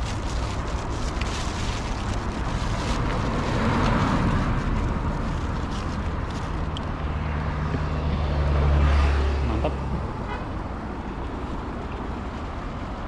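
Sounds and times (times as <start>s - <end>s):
vehicle engine passing: 1.3s - 11.0s.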